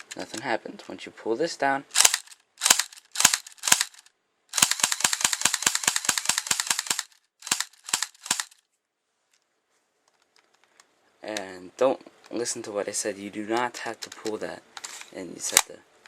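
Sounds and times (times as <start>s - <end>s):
airsoft pistol shooting: 2.0s - 8.6s.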